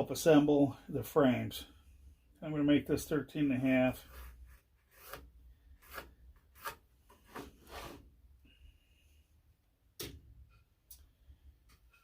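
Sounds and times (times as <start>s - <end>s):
pencil scratching on wood: 4.0s - 6.8s.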